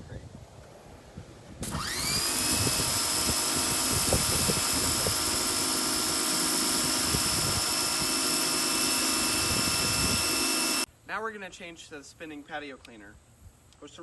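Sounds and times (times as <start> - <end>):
pressure washer motor whine: 1.6 - 10.9.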